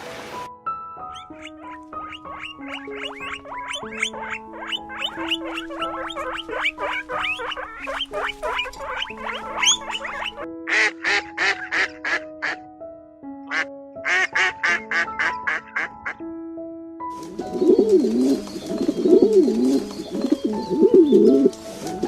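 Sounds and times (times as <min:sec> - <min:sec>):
soft background music: 0:00.0 - 0:22.0
pigeon cooing: 0:01.2 - 0:10.5, 0:17.3 - 0:22.0
duck quacking: 0:01.2 - 0:12.6, 0:13.5 - 0:16.2.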